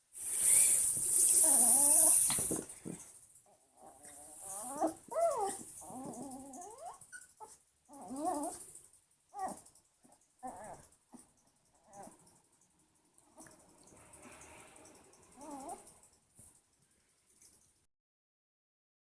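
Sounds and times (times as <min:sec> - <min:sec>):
puppy whining and whimpering: 0:01.3 - 0:02.6, 0:03.8 - 0:08.6, 0:09.4 - 0:09.7, 0:10.4 - 0:10.9, 0:15.4 - 0:15.9.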